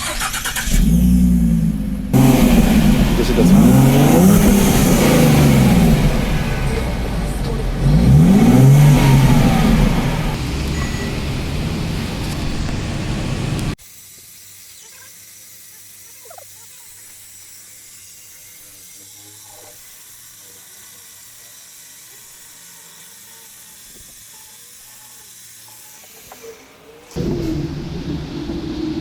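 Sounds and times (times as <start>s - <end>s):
loud car engine running: 0.0s - 13.8s, 27.2s - 29.0s
low hum: 0.8s - 13.8s.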